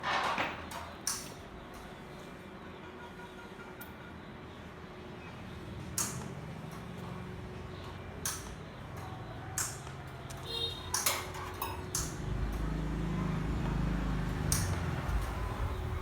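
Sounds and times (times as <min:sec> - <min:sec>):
sharp metallic clicks: 0:07.8 - 0:12.7, 0:14.4 - 0:15.7.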